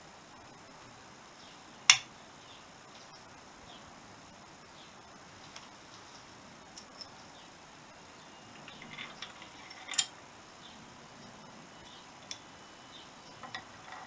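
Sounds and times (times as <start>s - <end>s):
hand tools clinking on metal: 8.5s - 10.2s, 13.3s - 14.0s.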